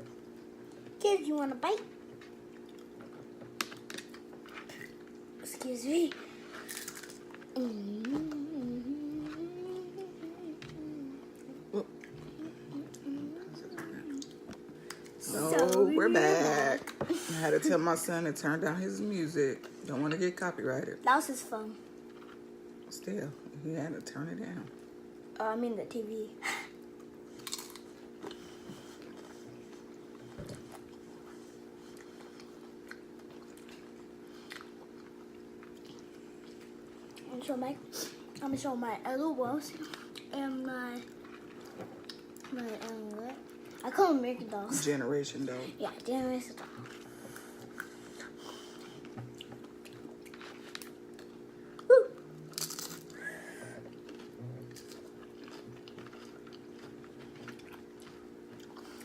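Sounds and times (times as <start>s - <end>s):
steady low hum: 0.0s - 59.0s
low hum: 2.1s - 21.0s
chewing and crunching chips: 6.4s - 8.4s, 27.0s - 28.4s, 29.0s - 37.5s, 39.6s - 44.0s, 46.0s - 59.0s
crunching chips: 6.6s - 7.5s, 27.4s - 27.9s, 52.5s - 53.2s.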